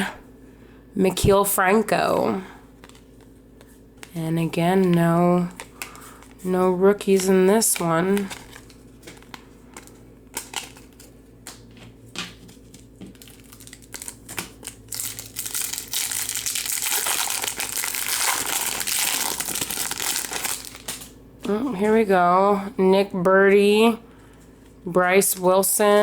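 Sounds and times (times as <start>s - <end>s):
wrapper crinkling: 5.4s - 11.8s, 12.4s - 21.2s.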